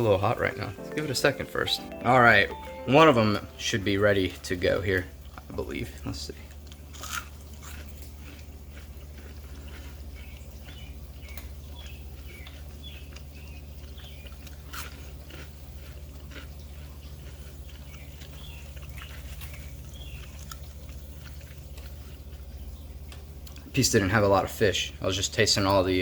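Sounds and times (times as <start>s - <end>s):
person chewing crunchy food: 5.0s - 23.7s.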